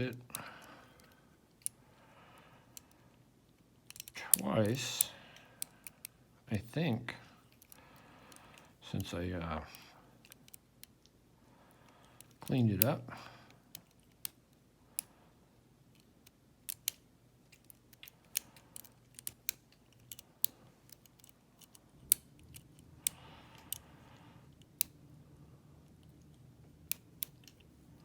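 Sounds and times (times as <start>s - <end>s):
lock pick metal clicks: 3.9s - 4.4s, 16.0s - 23.8s.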